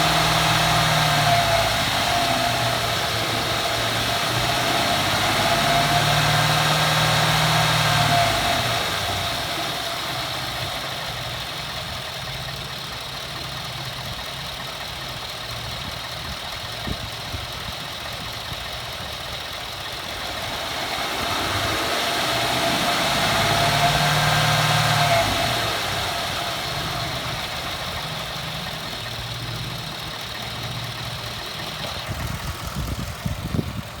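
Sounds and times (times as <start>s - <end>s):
high grinding screech: 0.0s - 10.9s, 20.1s - 33.6s
pickup engine idling and revving: 0.0s - 34.0s.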